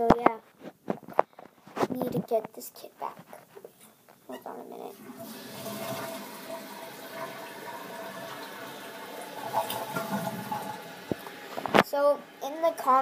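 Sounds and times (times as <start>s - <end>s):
water running and filling: 4.8s - 13.0s.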